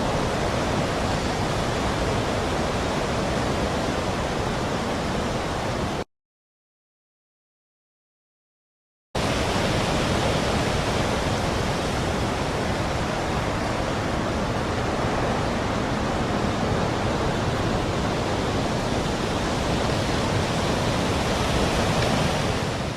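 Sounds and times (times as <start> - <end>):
steady rushing noise: 9.2 - 22.9.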